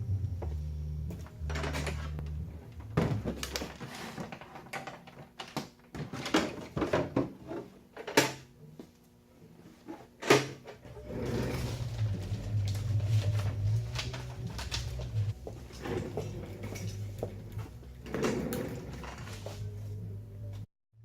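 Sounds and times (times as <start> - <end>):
low hum: 0.0 - 3.6, 10.8 - 20.7.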